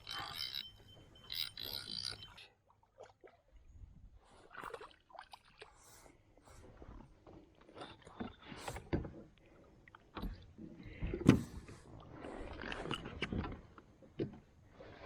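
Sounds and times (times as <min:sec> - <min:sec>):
knocks and scrapes on a kayak: 0:07.2 - 0:09.4, 0:10.2 - 0:15.0.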